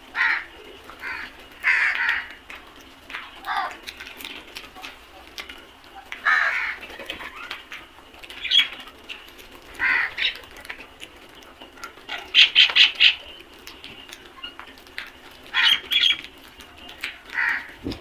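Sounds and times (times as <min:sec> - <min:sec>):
crows cawing: 0:00.1 - 0:02.5, 0:03.4 - 0:03.8, 0:06.1 - 0:07.6, 0:09.7 - 0:10.4, 0:15.5 - 0:16.2, 0:17.1 - 0:17.8.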